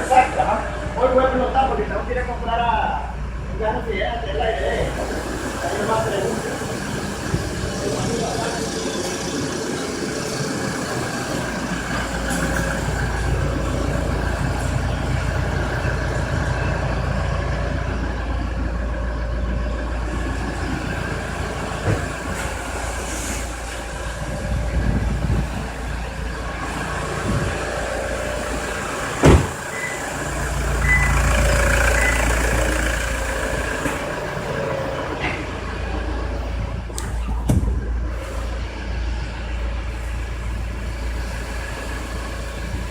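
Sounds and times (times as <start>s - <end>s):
diesel engine running: 0.0s - 42.9s
sharp knock: 29.2s - 29.5s.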